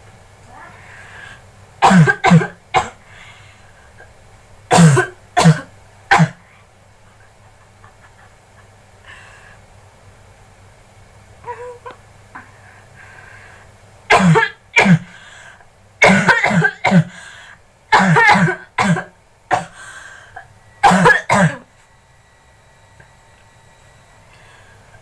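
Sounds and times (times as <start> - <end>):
person coughing: 1.8 - 3.0, 4.7 - 6.4, 14.1 - 15.1, 16.0 - 17.2, 17.9 - 19.8, 20.8 - 21.7.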